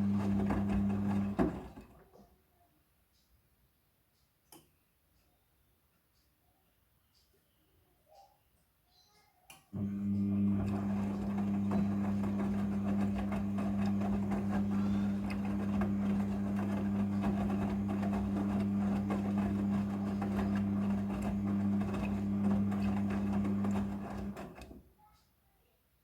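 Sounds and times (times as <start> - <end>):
washing machine motor hum: 0.0 - 2.0, 9.7 - 24.8.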